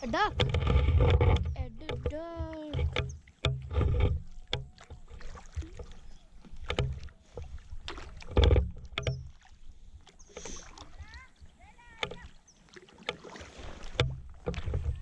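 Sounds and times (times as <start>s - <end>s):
knocks and thuds against boat: 0.0s - 9.4s, 10.9s - 12.4s, 13.0s - 15.0s
paddle splashing in water: 0.0s - 15.0s.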